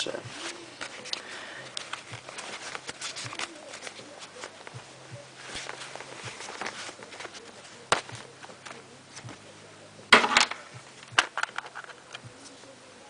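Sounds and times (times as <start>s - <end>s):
plastic parts clattering: 10.1s - 12.2s.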